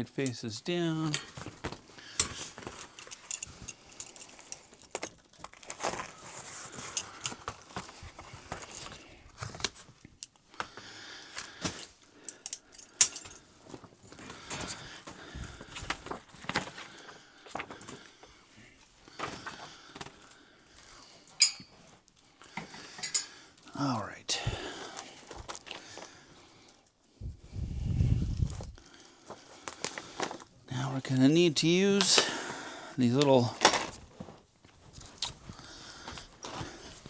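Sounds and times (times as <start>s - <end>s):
rustling: 0.9s - 10.8s, 33.3s - 37.0s.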